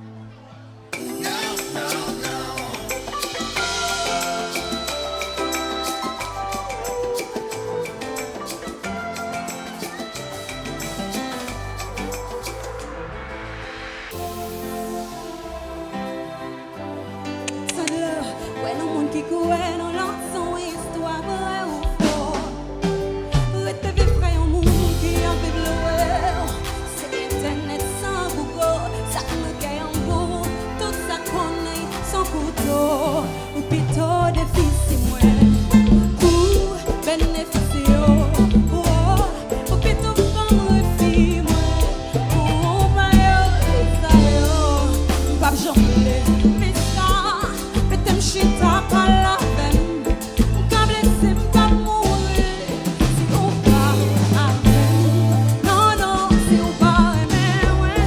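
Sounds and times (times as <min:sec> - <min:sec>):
guitar or keyboard melody: 0:00.0 - 0:58.0
live band music: 0:00.0 - 0:58.0
wavering melodic lines: 0:00.9 - 0:18.1
steady drum beat: 0:01.0 - 0:12.9, 0:21.8 - 0:58.0
bass line: 0:21.2 - 0:58.0.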